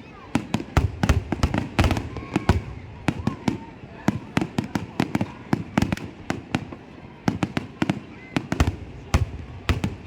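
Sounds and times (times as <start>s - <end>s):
fireworks bangs and cracks: 0.3s - 10.0s.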